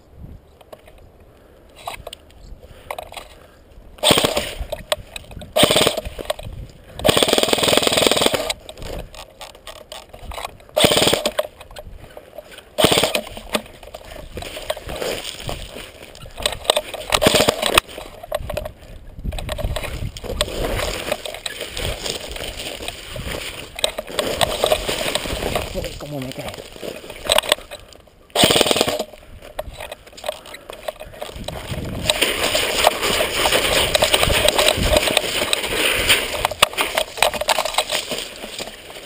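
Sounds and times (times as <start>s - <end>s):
rustling and scraping in brush: 11.4s - 28.0s, 29.2s - 39.0s.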